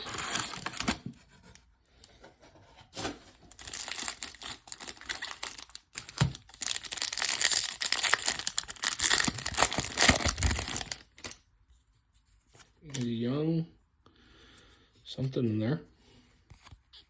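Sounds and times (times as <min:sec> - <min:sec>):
wrapper crinkling: 0:00.0 - 0:01.0, 0:03.5 - 0:11.4.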